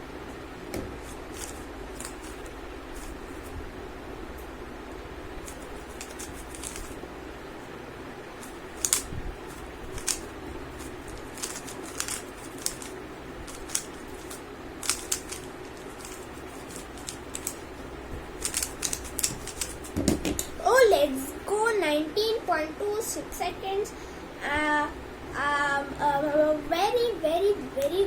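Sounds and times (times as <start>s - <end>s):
steady background hum: 0.0s - 28.0s
plastic puzzle cube layers clicking: 5.5s - 6.9s, 8.8s - 9.1s, 10.0s - 10.3s, 11.4s - 15.4s, 16.0s - 17.6s, 18.4s - 19.8s.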